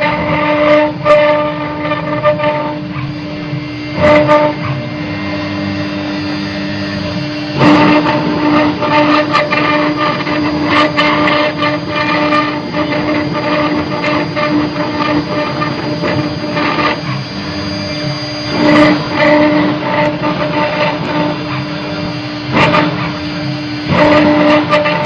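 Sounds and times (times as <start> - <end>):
router spindle whine: 0.0 - 25.0
cutter scraping stone: 7.0 - 25.0.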